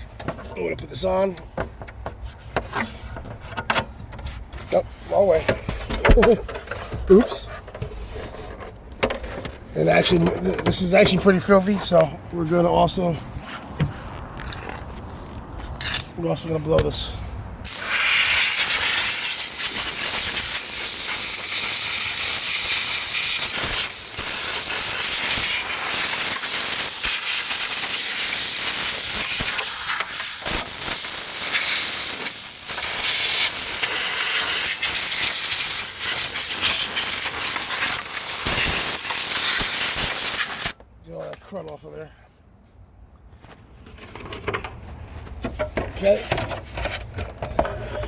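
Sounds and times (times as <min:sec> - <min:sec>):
compressed air hissing: 0:17.6 - 0:40.8.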